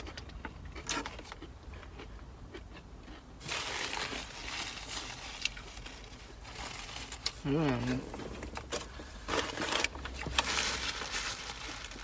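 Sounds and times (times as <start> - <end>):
paper wrapper crinkling: 3.4 - 7.5, 9.2 - 12.0.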